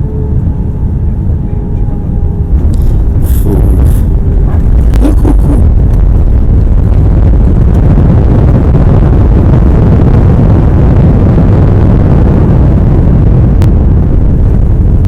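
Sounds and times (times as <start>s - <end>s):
aircraft engines and runway rumble: 0.0s - 15.0s.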